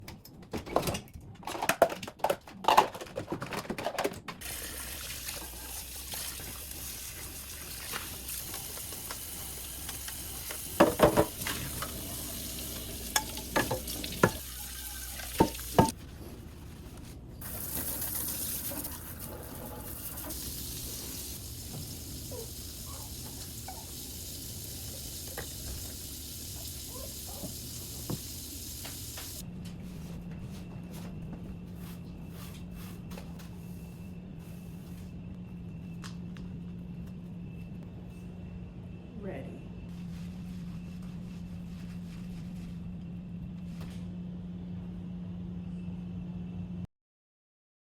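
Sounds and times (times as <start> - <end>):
running water from a tap: 4.4 - 15.9, 17.4 - 29.4
dishes and utensils clattering: 10.8 - 16.0.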